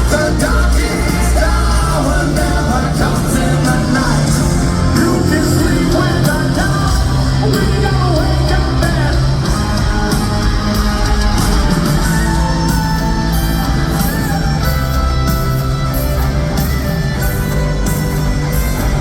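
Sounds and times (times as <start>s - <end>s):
lead vocalist singing: 0.0s - 12.8s
bass guitar: 0.0s - 19.0s
distorted electric guitars: 0.0s - 19.0s
drums: 0.0s - 19.0s.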